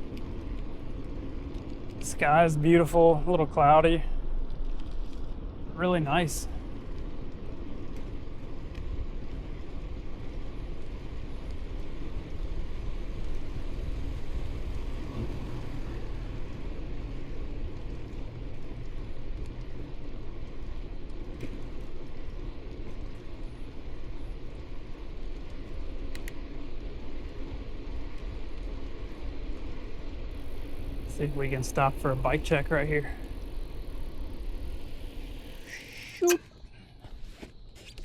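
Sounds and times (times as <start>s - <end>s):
wind rumble on microphone: 0.0s - 38.0s
light clicks: 26.0s - 26.4s.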